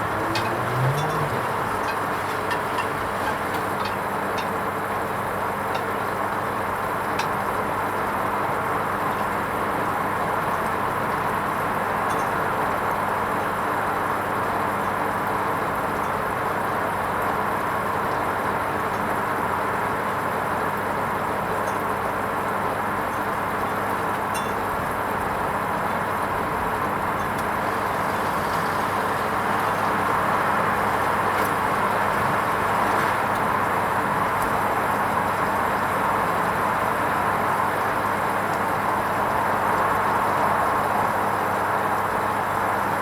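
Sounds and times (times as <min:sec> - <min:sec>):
washing machine running: 0:00.0 - 0:05.4, 0:26.0 - 0:36.3.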